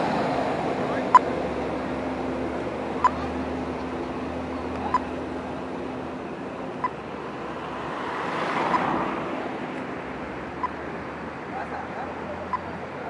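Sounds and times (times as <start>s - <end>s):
street traffic noise: 0.0s - 13.0s
vehicle passing close: 0.0s - 13.0s
crossing signal beeps: 3.0s - 3.3s, 6.8s - 7.0s, 12.4s - 12.8s.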